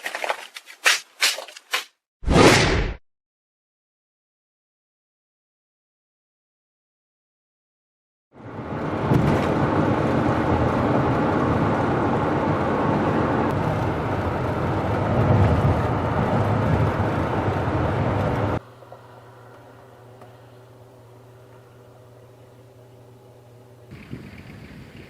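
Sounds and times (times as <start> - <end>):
road and wind noise: 8.3 - 25.0.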